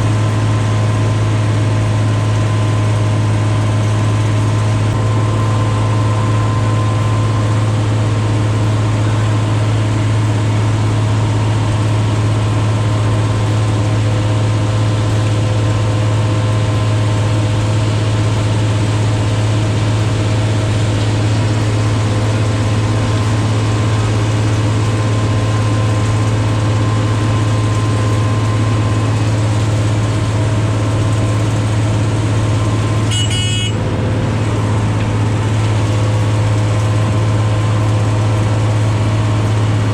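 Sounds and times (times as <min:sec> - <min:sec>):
paving machinery engine drone: 0:00.0 - 0:39.9
short high-pitched signal: 0:33.0 - 0:33.8.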